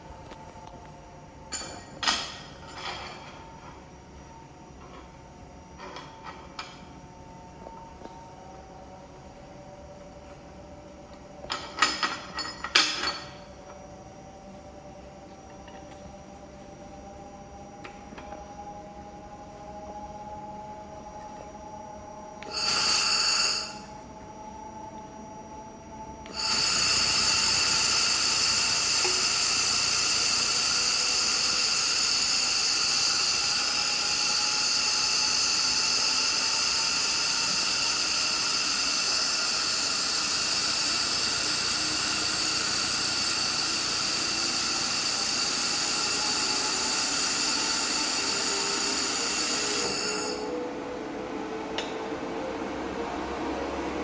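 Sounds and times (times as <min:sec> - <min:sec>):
faint machine hum: 0:00.0 - 0:54.0
laser welder hissing: 0:22.4 - 0:23.9, 0:26.3 - 0:50.5.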